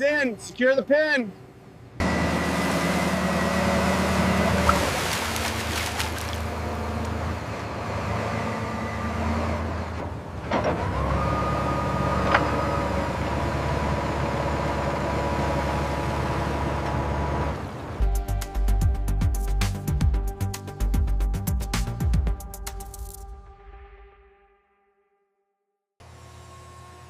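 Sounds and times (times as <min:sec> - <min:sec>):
large engine running: 0:01.4 - 0:19.1
music: 0:18.0 - 0:25.8.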